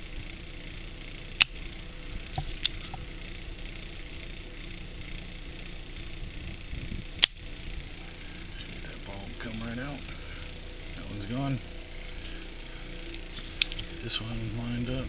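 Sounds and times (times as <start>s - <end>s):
desoldering iron clicks: 1.4s - 1.6s, 7.2s - 7.4s.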